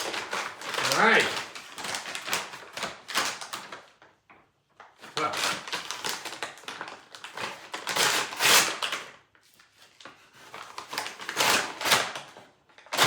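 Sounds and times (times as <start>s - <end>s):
plastic bag rustling and crinkling: 0.0s - 13.0s.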